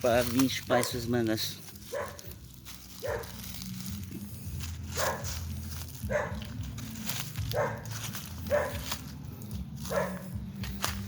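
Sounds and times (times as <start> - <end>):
dog barking: 0.7 - 1.2, 1.8 - 2.3, 3.0 - 3.4, 4.9 - 5.4, 6.0 - 6.6, 7.4 - 9.0, 9.9 - 10.4.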